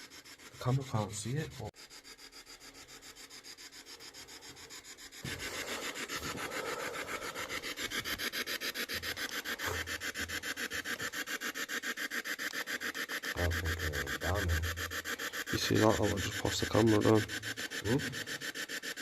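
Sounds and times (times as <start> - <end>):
pulsing white-noise static: 5.2 - 19.0.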